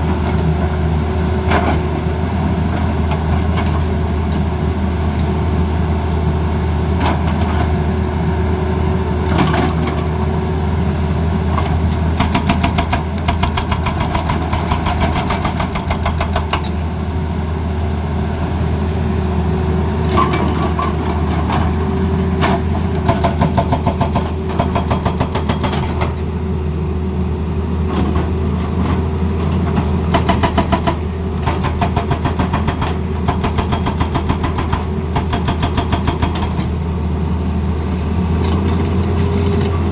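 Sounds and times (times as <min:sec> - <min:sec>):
diesel excavator engine running: 0:00.0 - 0:39.9
hydraulic breaker hammering: 0:30.1 - 0:36.8.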